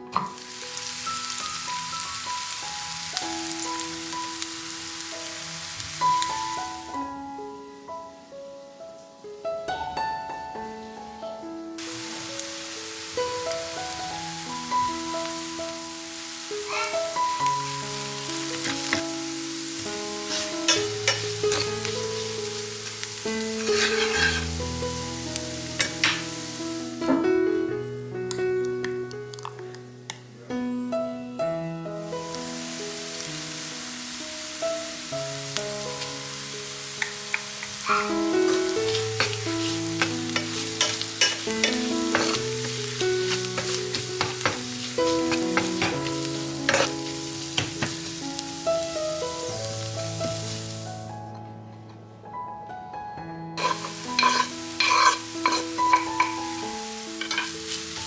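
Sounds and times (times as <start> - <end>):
light piano background music: 0.0 - 58.0
food sizzling in a frying pan: 0.1 - 7.6, 11.8 - 27.1, 32.0 - 51.1, 53.6 - 58.0
utensil knocking and scraping pan: 18.6 - 19.0, 20.3 - 22.0, 23.6 - 24.5, 25.8 - 26.3, 37.8 - 47.0, 53.6 - 56.4, 57.2 - 57.8
utensil knocking against pan: 53.6 - 56.4.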